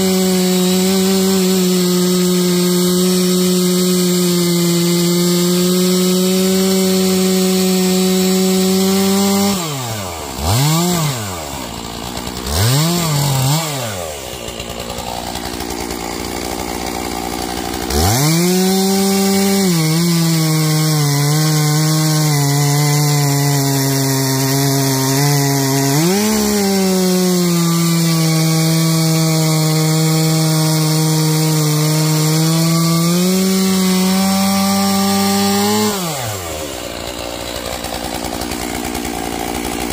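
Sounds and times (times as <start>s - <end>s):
chainsaw cutting logs: 0.0s - 39.9s.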